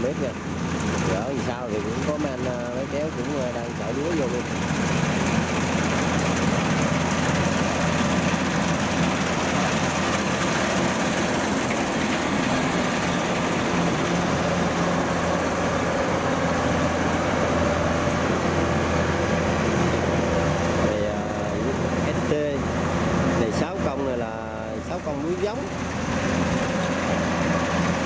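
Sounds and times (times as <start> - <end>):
diesel farm machinery engine drone: 0.0 - 28.0.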